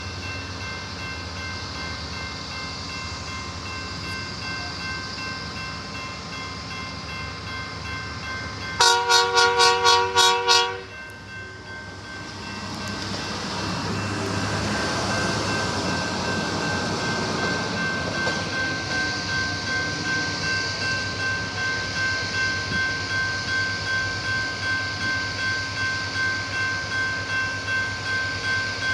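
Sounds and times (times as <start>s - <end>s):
short horn blasts: 8.8s - 10.9s.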